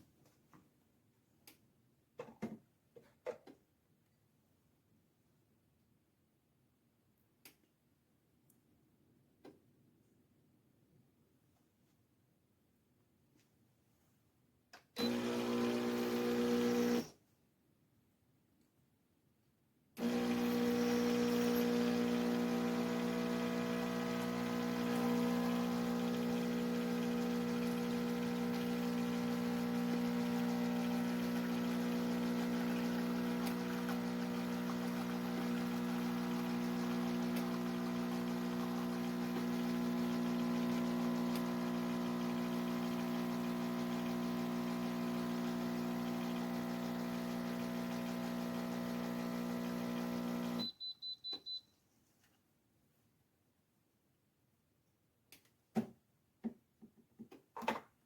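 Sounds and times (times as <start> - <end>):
espresso machine pump humming: 15.0 - 17.1, 20.0 - 50.6
short high beeps: 50.6 - 51.7.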